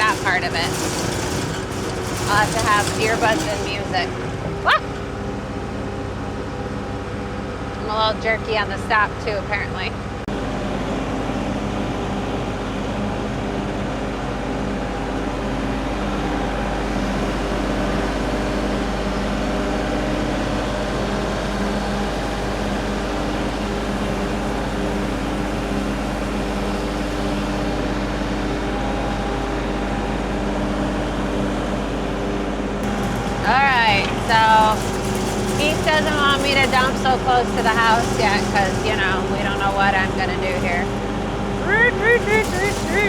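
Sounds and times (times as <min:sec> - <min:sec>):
diesel engine running: 0:00.0 - 0:09.9, 0:32.8 - 0:43.0.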